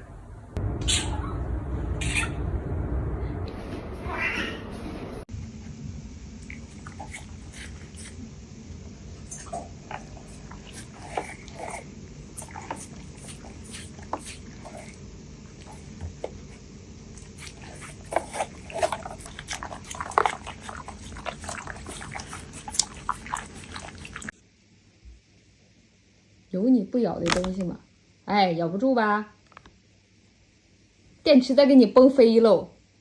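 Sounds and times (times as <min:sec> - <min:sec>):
dog whimpering and yipping: 0:00.8 - 0:02.4.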